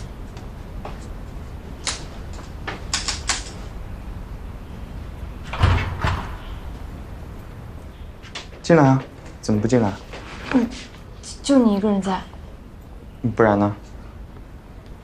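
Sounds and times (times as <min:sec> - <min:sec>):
door opening with a thud: 0:05.4 - 0:06.6.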